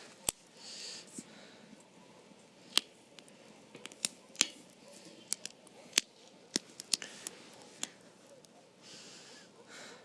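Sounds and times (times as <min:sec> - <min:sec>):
campfire crackling: 0:00.0 - 0:09.8
sharp pops of firewood: 0:02.7 - 0:04.6.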